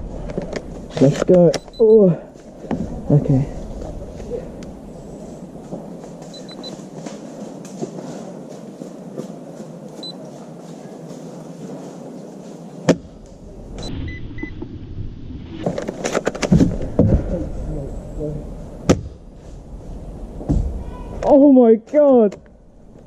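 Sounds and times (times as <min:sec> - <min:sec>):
outdoor rumble with faint ticks: 0:00.2 - 0:07.8.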